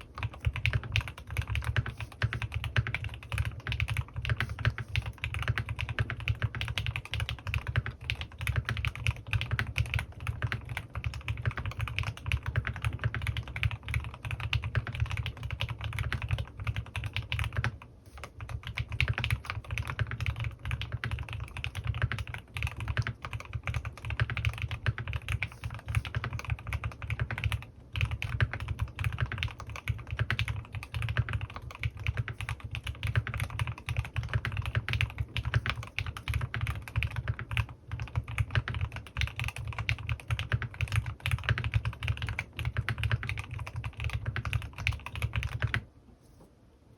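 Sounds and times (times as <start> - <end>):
fast typing on mechanical keyboard: 0.0 - 45.9.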